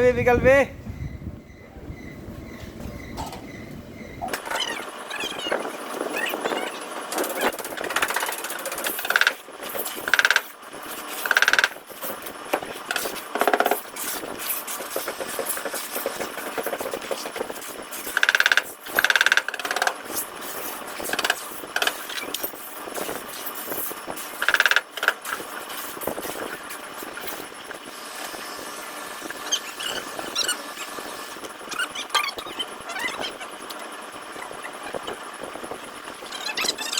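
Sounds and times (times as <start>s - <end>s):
bodywork tools ringing on car panel: 2.6s - 4.3s.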